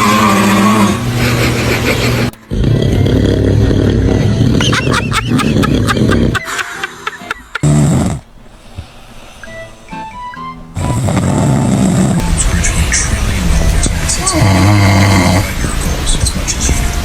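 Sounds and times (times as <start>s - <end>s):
man snoring loudly: 0.0s - 6.6s, 7.4s - 10.0s, 10.8s - 12.2s, 14.2s - 15.9s.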